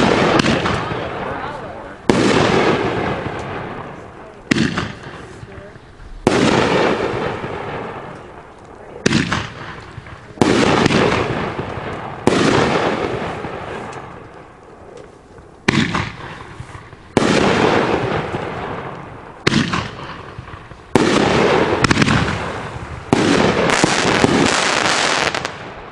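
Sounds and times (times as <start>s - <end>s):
firework shots: 0.0s - 25.9s
firework strobe crackling tail: 16.1s - 25.6s.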